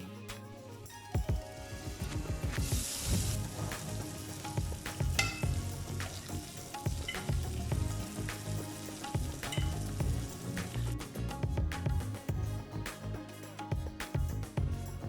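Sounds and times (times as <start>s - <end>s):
background music: 0.0s - 15.0s
zucchini sizzling in a pan: 2.6s - 10.5s.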